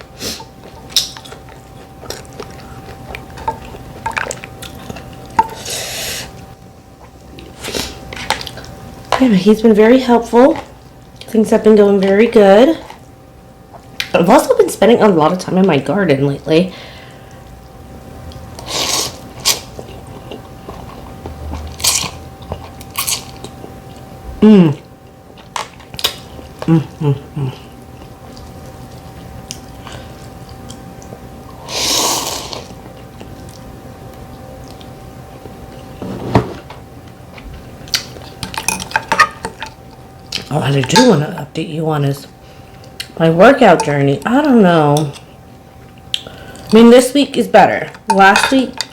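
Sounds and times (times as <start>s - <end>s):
wet chewing sounds: 0.4s - 5.4s, 27.6s - 31.6s, 32.5s - 35.9s.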